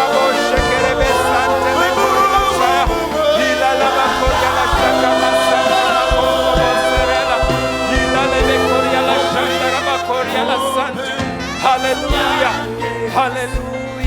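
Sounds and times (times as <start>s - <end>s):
band with drum beats: 0.0s - 14.0s
voices singing together: 0.0s - 14.0s.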